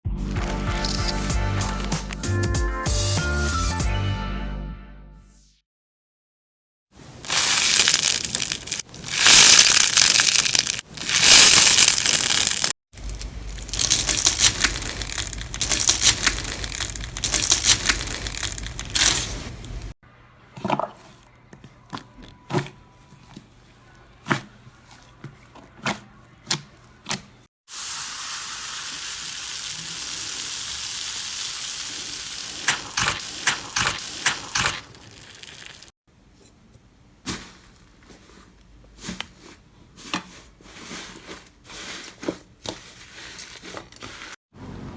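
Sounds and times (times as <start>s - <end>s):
slime crackling and crunching: 0.3s - 2.1s, 7.2s - 19.6s, 31.9s - 35.9s
steady hiss: 27.7s - 34.8s
sharp pops and clicks: 32.6s - 35.1s.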